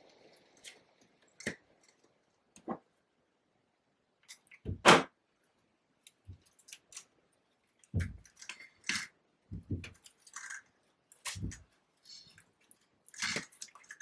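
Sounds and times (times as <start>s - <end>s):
soft knocks: 8.0s - 8.3s, 9.5s - 9.9s.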